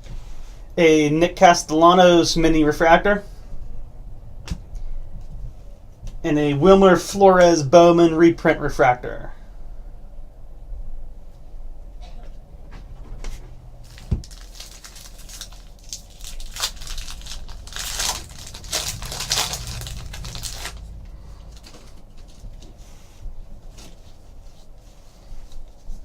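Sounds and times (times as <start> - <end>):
wrapper crinkling and tearing: 13.8 - 22.4.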